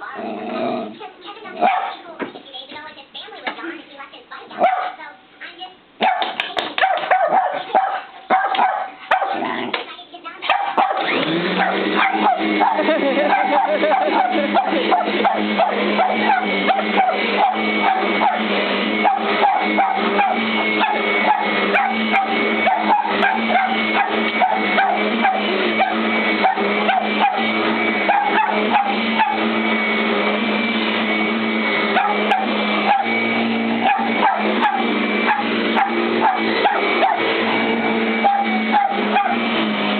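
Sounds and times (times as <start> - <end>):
dog barking: 1.6 - 2.0, 4.6 - 5.0, 6.0 - 9.6, 10.4 - 29.5, 31.9 - 33.2, 33.8 - 37.3, 38.2 - 39.6
vacuum cleaner humming: 6.2 - 9.9, 10.6 - 39.9.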